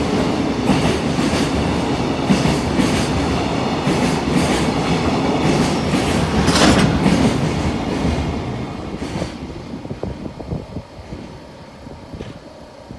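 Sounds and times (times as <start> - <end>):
freight train wheels clattering: 2.3 - 9.4.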